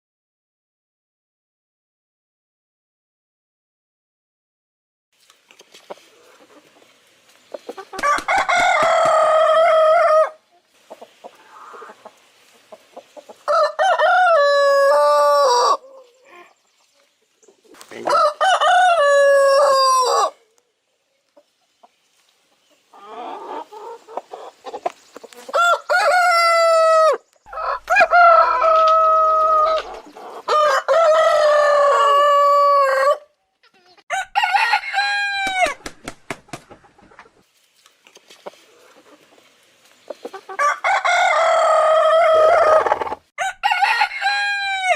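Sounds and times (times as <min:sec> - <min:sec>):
rooster crowing: 0:08.0 - 0:10.4, 0:13.4 - 0:16.0, 0:18.0 - 0:20.4, 0:25.5 - 0:33.3, 0:34.1 - 0:35.8, 0:40.6 - 0:44.9.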